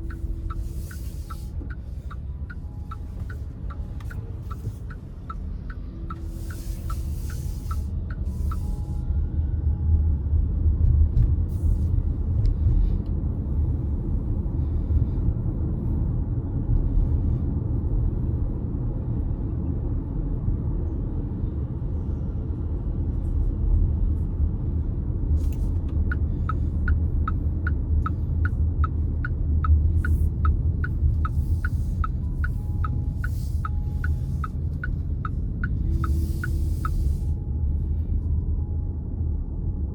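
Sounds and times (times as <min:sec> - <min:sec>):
turn signal ticking: 0:00.0 - 0:09.7, 0:25.4 - 0:37.8
road and engine rumble: 0:00.0 - 0:39.9.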